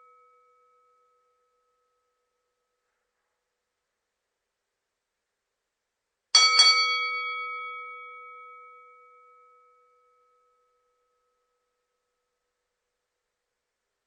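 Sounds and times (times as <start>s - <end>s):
boxing ring bell ringing: 6.4s - 11.1s.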